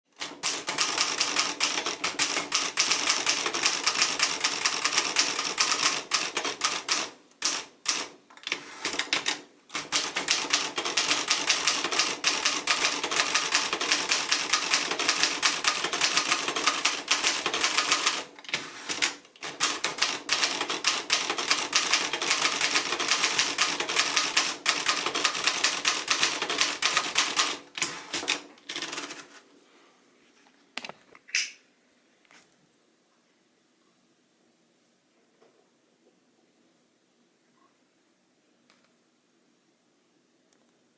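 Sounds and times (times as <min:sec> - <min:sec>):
typewriter keys clacking: 0:00.2 - 0:29.3.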